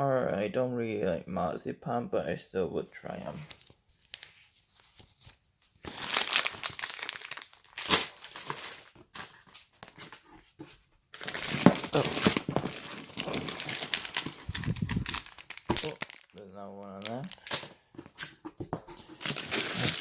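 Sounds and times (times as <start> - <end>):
snack packaging crinkling: 5.9 - 10.2, 11.2 - 20.0.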